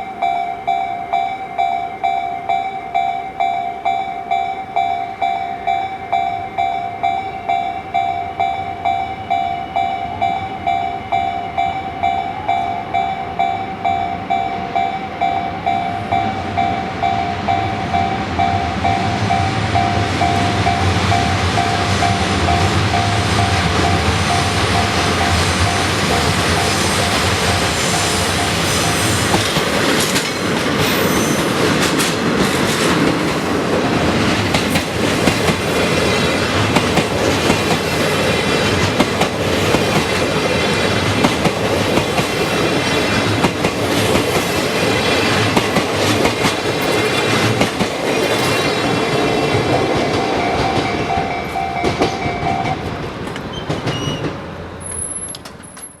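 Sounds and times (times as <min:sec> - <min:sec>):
level crossing warning bell: 0:00.0 - 0:29.7, 0:44.1 - 0:53.0
train wheels clattering and squealing: 0:18.0 - 0:56.0.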